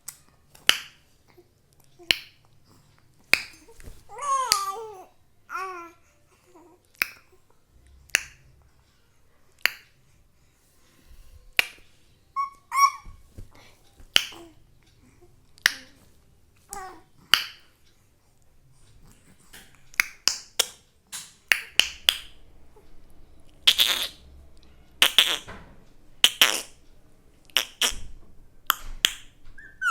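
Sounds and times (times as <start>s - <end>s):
baby babbling: 3.6s - 6.8s, 12.4s - 13.2s, 16.7s - 17.1s, 29.6s - 29.9s.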